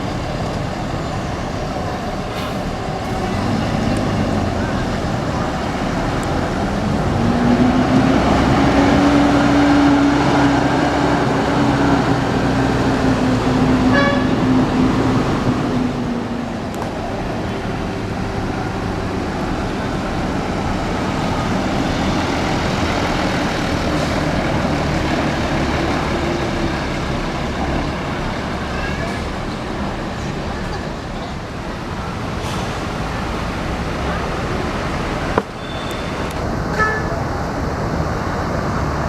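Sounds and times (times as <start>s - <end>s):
bus engines and traffic rumble: 0.0s - 39.0s
short horn toot: 13.9s - 14.4s.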